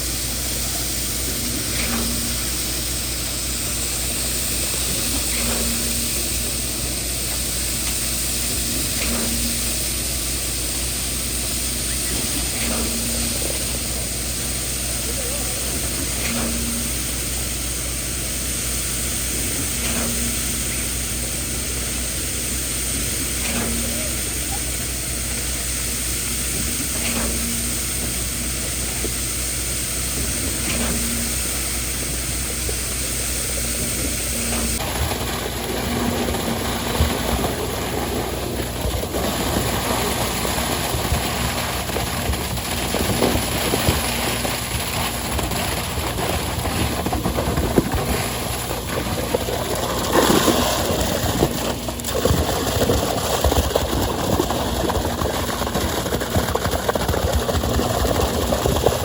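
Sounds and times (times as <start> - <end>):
low pulsing tone: 0.0 - 41.8
heavy engine running: 0.0 - 59.0.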